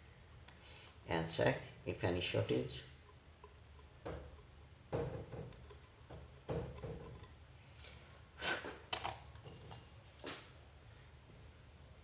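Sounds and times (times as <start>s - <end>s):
tools knocking on workbench: 4.0s - 7.2s.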